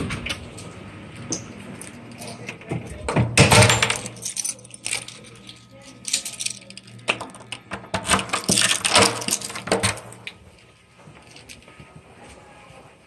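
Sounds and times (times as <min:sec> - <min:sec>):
low steady hum: 0:00.0 - 0:13.0
keys jangling: 0:03.6 - 0:07.0, 0:08.1 - 0:10.1.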